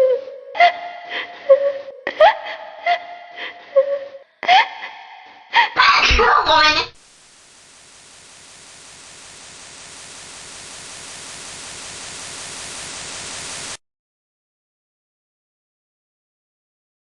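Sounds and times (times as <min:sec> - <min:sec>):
static hiss: 0:06.8 - 0:13.8.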